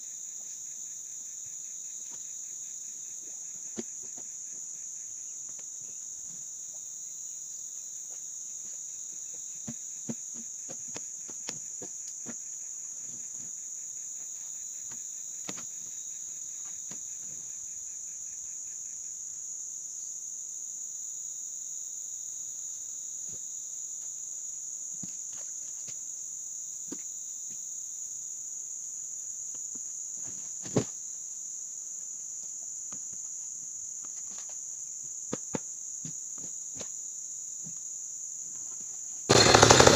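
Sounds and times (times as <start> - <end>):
low pulsed insect trill: 0.0 - 30.2
high-pitched insect chorus: 0.0 - 39.9.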